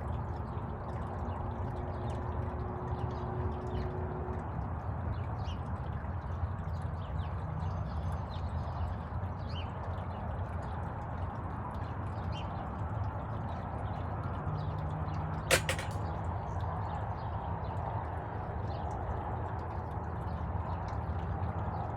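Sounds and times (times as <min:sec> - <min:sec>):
sharp clatter of clicks: 0:15.5 - 0:16.2.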